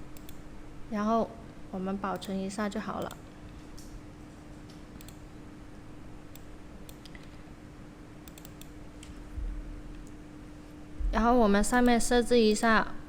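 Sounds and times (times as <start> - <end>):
faint electrical hum: 0.0 - 13.0.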